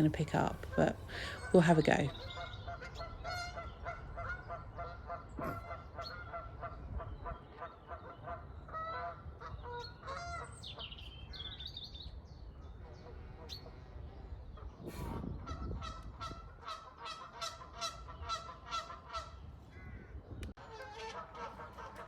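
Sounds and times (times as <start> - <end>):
geese honking: 0.0 - 10.9, 14.6 - 20.0, 20.6 - 22.0
small birds chirping: 0.0 - 16.6.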